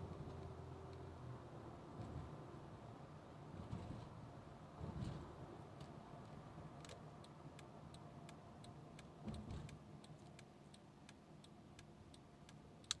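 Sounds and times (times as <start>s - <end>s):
turn signal ticking: 7.2s - 13.0s.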